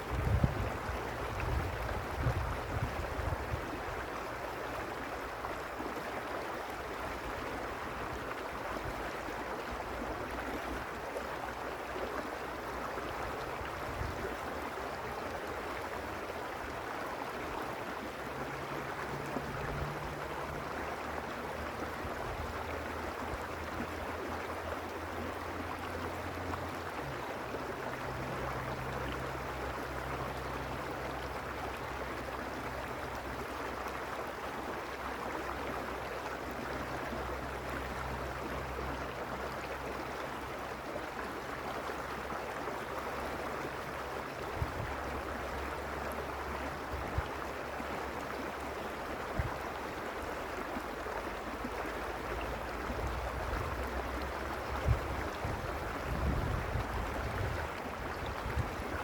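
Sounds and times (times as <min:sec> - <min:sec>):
wind buffeting microphone: 0:00.0 - 0:03.8, 0:44.5 - 0:45.3, 0:54.6 - 0:59.0
stream water rushing: 0:00.0 - 0:59.0.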